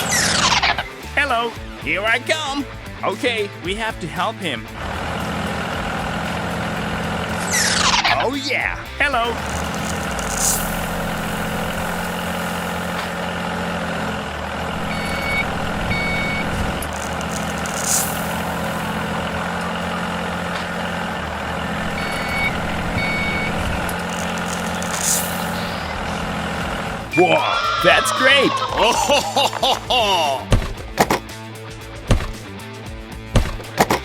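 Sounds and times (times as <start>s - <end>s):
heavy vehicle engine running: 0.0s - 3.4s, 4.0s - 27.4s
reversing beeps: 14.8s - 17.6s, 21.8s - 26.0s, 27.1s - 27.6s.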